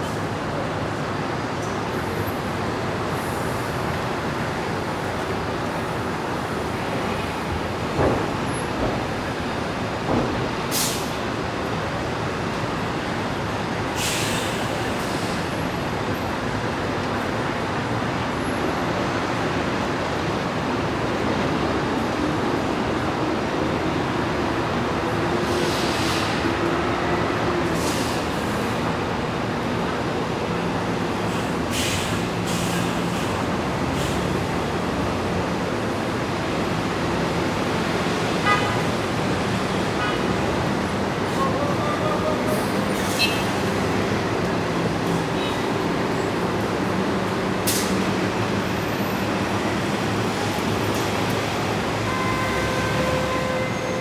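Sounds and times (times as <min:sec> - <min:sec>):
city street traffic: 0:00.0 - 0:54.0
air brakes hissing: 0:10.7 - 0:11.2, 0:14.0 - 0:15.6, 0:27.6 - 0:28.8, 0:31.2 - 0:34.5, 0:41.3 - 0:44.4, 0:47.5 - 0:48.5.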